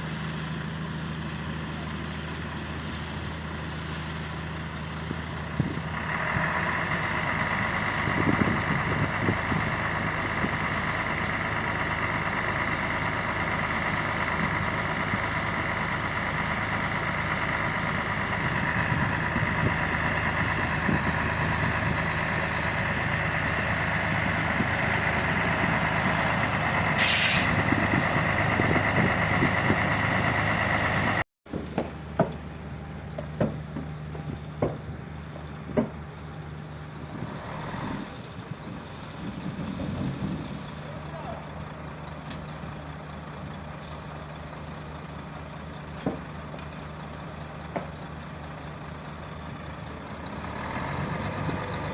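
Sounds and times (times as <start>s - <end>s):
heavy diesel engine running: 0.0s - 51.9s
air hiss: 27.0s - 27.6s
sharp knocks: 31.5s - 32.5s, 33.1s - 35.0s, 35.7s - 36.0s.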